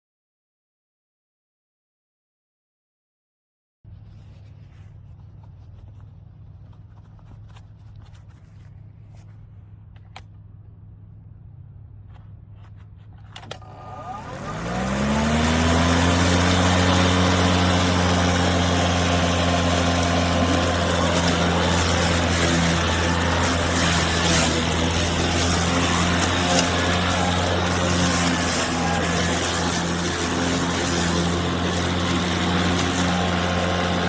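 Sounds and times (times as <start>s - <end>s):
electric lawn mower running hum: 13.3s - 34.0s.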